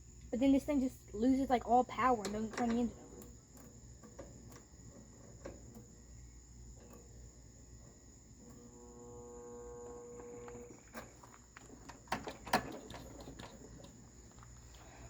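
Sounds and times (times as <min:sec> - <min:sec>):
crickets chirping: 0:00.0 - 0:15.0
sharp clicks and knocks: 0:02.2 - 0:05.9, 0:10.2 - 0:14.5
starter motor whining: 0:06.7 - 0:15.0.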